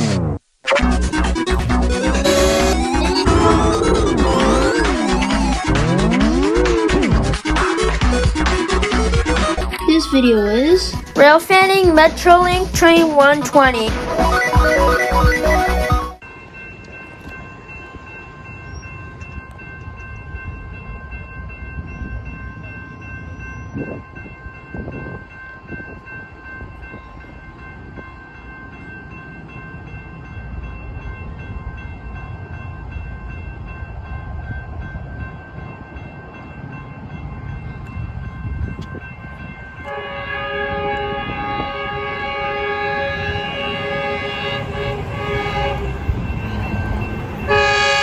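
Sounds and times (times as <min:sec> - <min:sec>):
train rumbling: 0:00.9 - 0:48.0
locomotive horn chord: 0:01.1 - 0:07.4, 0:39.8 - 0:48.0
faint high tones: 0:01.9 - 0:07.4.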